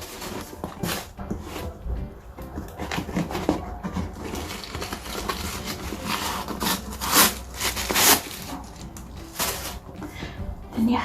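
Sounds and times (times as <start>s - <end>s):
paper rustling and crinkling: 0.0s - 10.4s.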